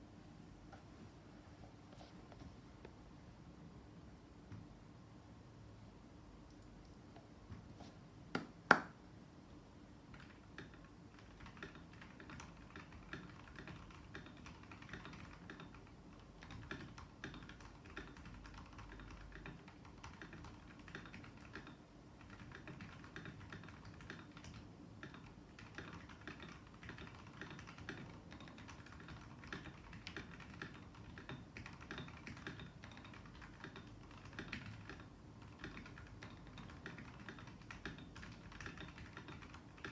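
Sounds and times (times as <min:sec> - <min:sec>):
typing on a mechanical keyboard: 0:10.1 - 0:39.9
loud keyboard clacks: 0:10.2 - 0:39.9.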